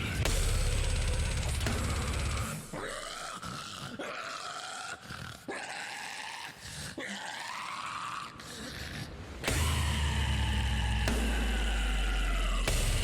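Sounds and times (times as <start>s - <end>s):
metal band playing: 0.0s - 3.1s.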